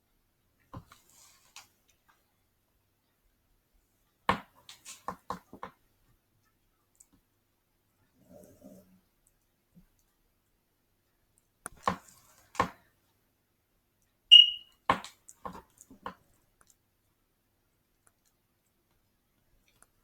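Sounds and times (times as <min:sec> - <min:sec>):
short high-pitched beep: 0:14.3 - 0:14.7.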